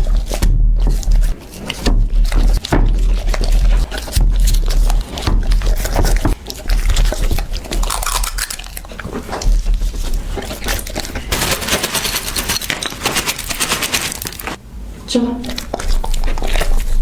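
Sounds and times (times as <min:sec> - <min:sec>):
dog food bowl clattering: 0:07.8 - 0:14.6.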